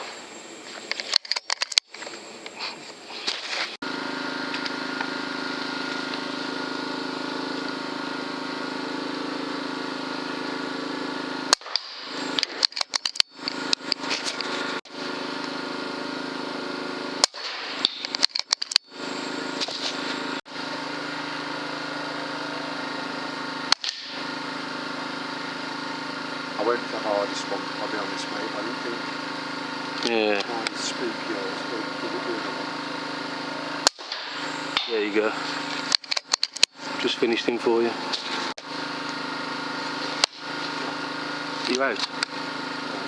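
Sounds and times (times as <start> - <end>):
steady hum with pitched tones: 0.0 - 43.0
air rifle shots: 11.5 - 12.8, 17.2 - 18.4, 33.8 - 35.1.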